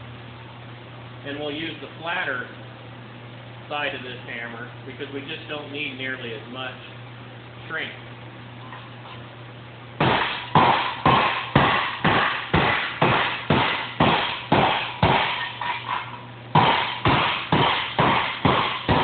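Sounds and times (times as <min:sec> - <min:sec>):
hammer striking sheet metal: 0:10.0 - 0:19.0.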